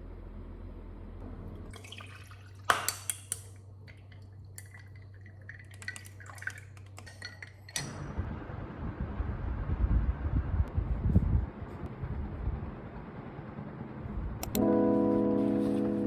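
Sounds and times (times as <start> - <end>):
tableware clinking: 1.8 - 8.0
low hum: 7.1 - 16.0.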